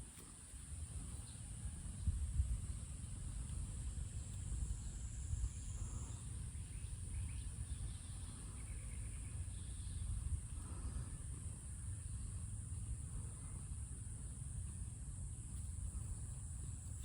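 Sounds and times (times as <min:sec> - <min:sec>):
wind rumble on microphone: 0:00.0 - 0:17.0
faint bird chirps: 0:04.7 - 0:11.2.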